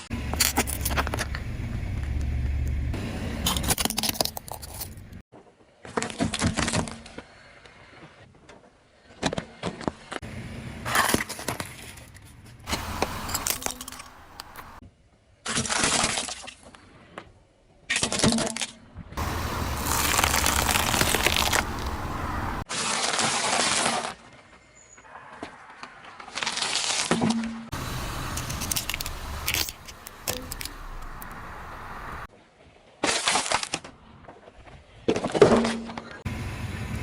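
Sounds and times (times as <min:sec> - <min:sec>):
objects cracking under car tyres: 0:00.3 - 0:02.8, 0:03.4 - 0:05.2, 0:10.9 - 0:14.8, 0:17.9 - 0:24.4, 0:25.3 - 0:32.3.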